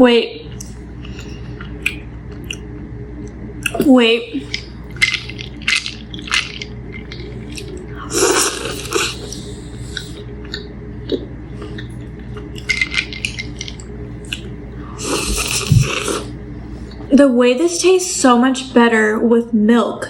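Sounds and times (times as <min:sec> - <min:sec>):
person chewing with wet smacks: 0:00.5 - 0:16.3.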